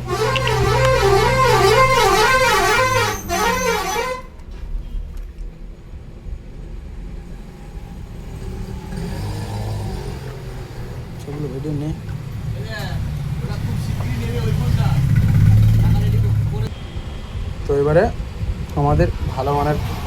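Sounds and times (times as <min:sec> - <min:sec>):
warbling vehicle horn: 0:00.0 - 0:05.0
low engine hum: 0:00.0 - 0:16.7
faint low rumble: 0:04.2 - 0:08.9.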